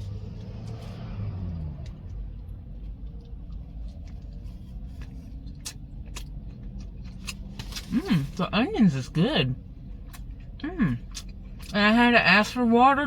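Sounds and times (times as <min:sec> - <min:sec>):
person chewing food: 0:00.0 - 0:08.4, 0:09.6 - 0:11.8.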